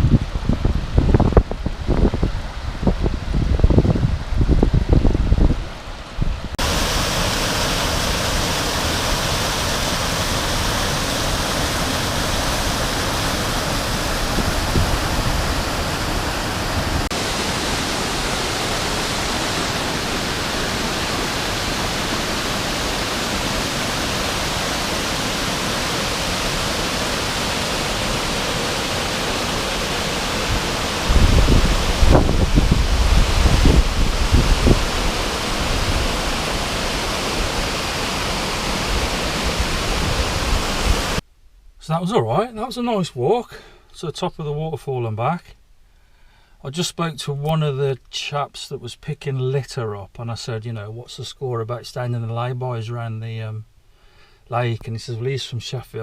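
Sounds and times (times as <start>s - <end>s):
wind rumble on microphone: 0.0s - 6.9s, 12.1s - 17.1s, 30.4s - 41.2s
waterfall rushing: 0.0s - 41.2s.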